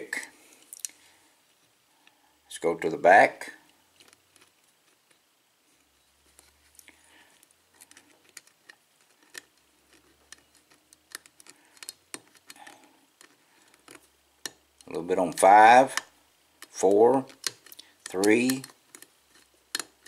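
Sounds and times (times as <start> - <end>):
lock pick clicking and scraping: 7.7 - 14.9, 15.8 - 20.0.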